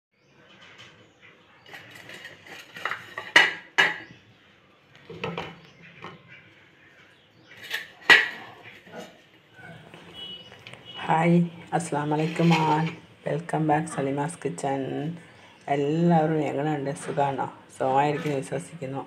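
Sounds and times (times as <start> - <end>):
pots and utensils clinking: 1.6 - 4.1, 7.6 - 9.2.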